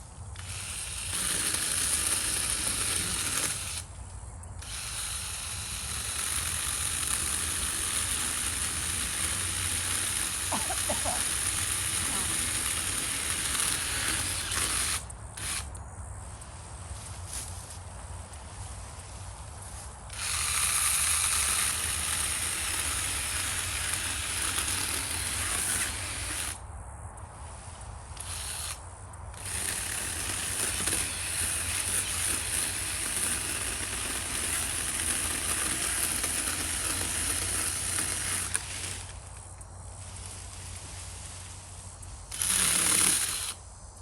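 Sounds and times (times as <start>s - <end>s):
mini chainsaw cutting wood: 0.4s - 3.9s, 4.6s - 15.7s, 20.1s - 26.6s, 28.2s - 39.5s, 42.2s - 43.6s.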